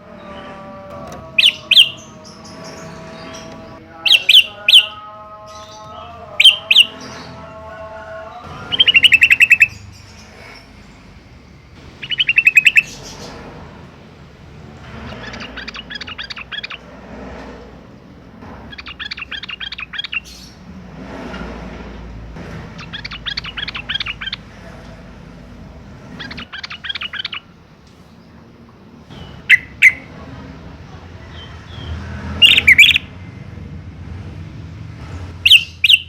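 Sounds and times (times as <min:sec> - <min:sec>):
bird singing bubbling phrases: 0:01.4 - 0:02.1, 0:04.0 - 0:05.0, 0:05.6 - 0:07.1, 0:08.6 - 0:10.1, 0:12.0 - 0:13.2, 0:15.1 - 0:16.8, 0:18.7 - 0:20.6, 0:22.8 - 0:24.5, 0:26.2 - 0:27.5, 0:29.2 - 0:30.1, 0:32.4 - 0:33.1, 0:35.4 - 0:36.0
bird rapid chatter: 0:01.4 - 0:05.8, 0:06.4 - 0:07.3, 0:08.6 - 0:10.8, 0:11.8 - 0:13.7, 0:14.6 - 0:21.8, 0:22.4 - 0:27.5, 0:29.1 - 0:30.2, 0:31.4 - 0:33.1, 0:35.4 - 0:36.0
loud sharp bird call: 0:01.4 - 0:05.8, 0:06.4 - 0:07.3, 0:08.6 - 0:09.9, 0:12.0 - 0:13.4, 0:31.8 - 0:33.1, 0:35.4 - 0:36.0.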